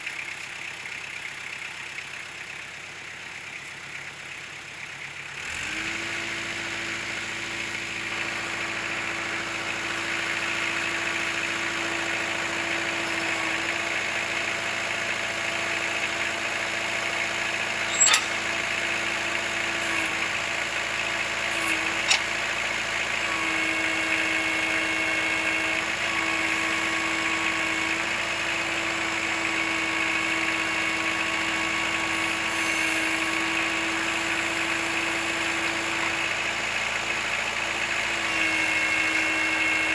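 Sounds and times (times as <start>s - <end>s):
tractor diesel engine running: 0.0s - 39.9s
sharp metal clanks: 17.8s - 18.6s, 21.9s - 22.3s.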